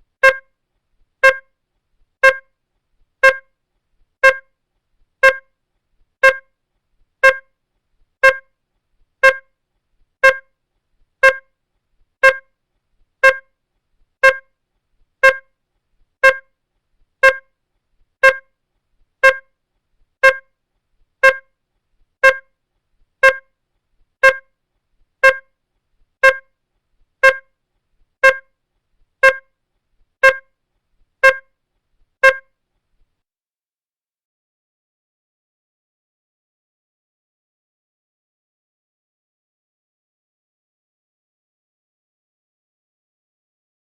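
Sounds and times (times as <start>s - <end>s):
electronic beeper short beeps: 0.2s - 0.5s, 1.2s - 1.4s, 2.2s - 2.4s, 3.2s - 3.4s, 4.2s - 4.4s, 8.2s - 8.4s, 10.2s - 10.4s, 11.2s - 11.4s, 13.2s - 13.4s, 14.2s - 14.4s, 15.2s - 15.4s, 16.2s - 16.4s, 17.2s - 17.4s, 18.2s - 18.4s, 19.2s - 19.5s, 20.2s - 20.4s, 21.2s - 21.5s, 22.2s - 22.5s, 23.2s - 23.4s, 24.2s - 24.4s, 25.2s - 25.5s, 26.2s - 26.5s, 27.2s - 27.5s, 28.2s - 28.5s, 29.2s - 29.4s, 30.2s - 30.4s, 31.2s - 31.5s, 32.2s - 32.5s.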